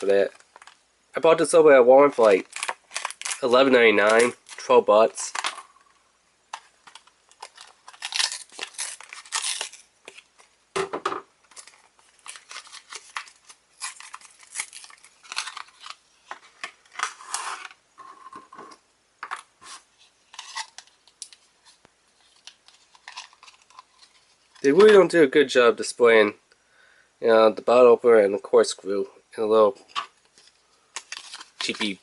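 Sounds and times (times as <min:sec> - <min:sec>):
packaging tearing and crinkling: 0:02.1 - 0:05.6, 0:06.5 - 0:10.5, 0:11.5 - 0:17.8, 0:22.2 - 0:24.9, 0:30.4 - 0:32.0.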